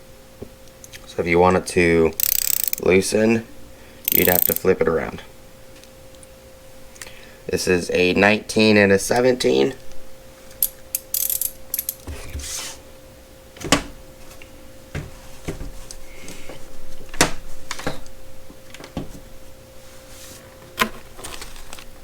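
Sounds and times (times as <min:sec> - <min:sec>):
faint steady hum: 0:00.0 - 0:22.0
metal wrenches clicking: 0:02.2 - 0:02.9, 0:04.1 - 0:04.7, 0:10.6 - 0:12.0.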